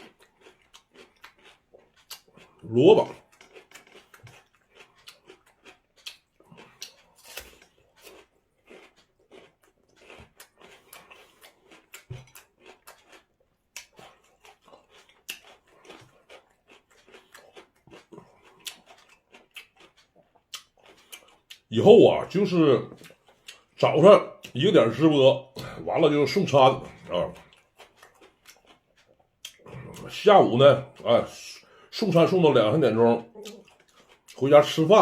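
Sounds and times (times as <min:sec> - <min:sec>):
mouth clicks and smacks: 0:00.0 - 0:21.7, 0:26.8 - 0:31.1
person chewing and crunching: 0:00.0 - 0:35.0.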